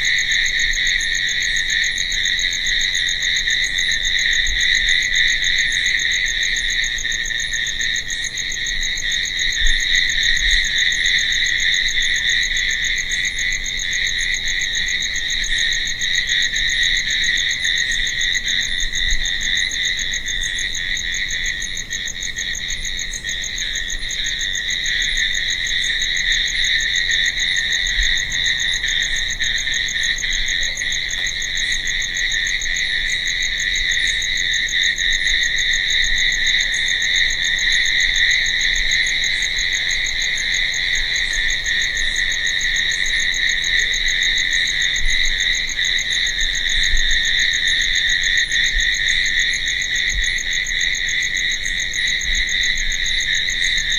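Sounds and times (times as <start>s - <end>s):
crickets chirping: 0.0s - 53.9s.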